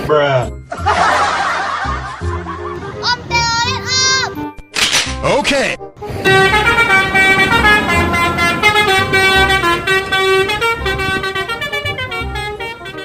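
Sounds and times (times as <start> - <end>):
bus air horn playing a tune: 6.1 - 13.0.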